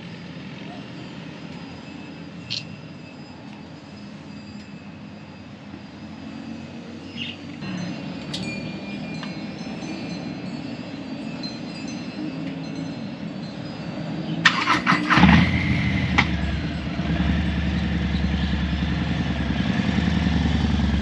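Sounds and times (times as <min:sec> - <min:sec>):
faint high ringing tones: 0:00.0 - 0:21.0
street traffic: 0:00.0 - 0:21.0
motorcycle engine running low: 0:14.5 - 0:21.0.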